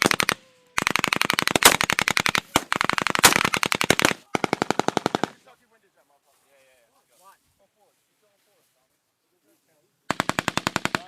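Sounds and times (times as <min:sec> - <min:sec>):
machine gun bursts: 0:00.0 - 0:05.3.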